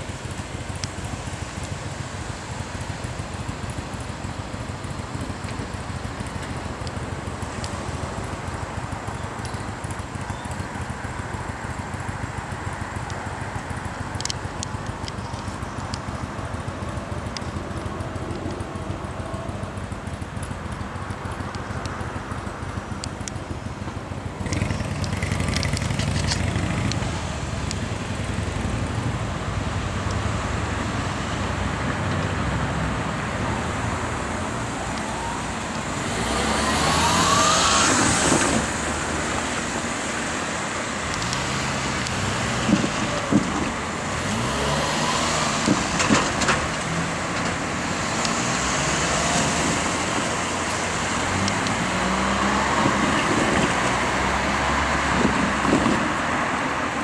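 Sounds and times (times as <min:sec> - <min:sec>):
vehicle low rumble: 0:00.0 - 0:57.0
rising whine: 0:32.8 - 0:43.4.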